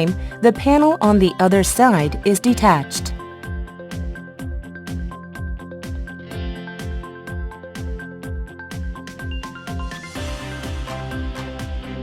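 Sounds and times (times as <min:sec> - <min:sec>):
music with steady kick drum: 0:02.5 - 0:12.0.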